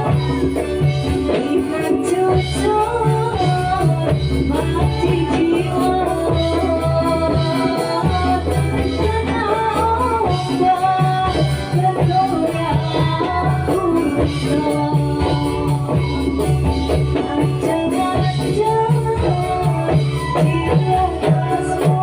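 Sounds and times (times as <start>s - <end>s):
drum and frame drum beat: 0.0s - 22.0s
jingling percussion: 0.0s - 22.0s
melody line: 0.0s - 22.0s.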